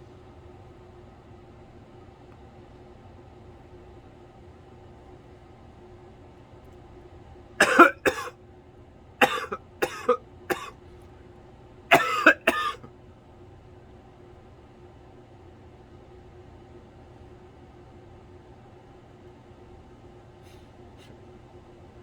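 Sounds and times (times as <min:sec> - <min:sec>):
person coughing: 0:07.6 - 0:08.3, 0:09.2 - 0:10.8, 0:11.9 - 0:12.9.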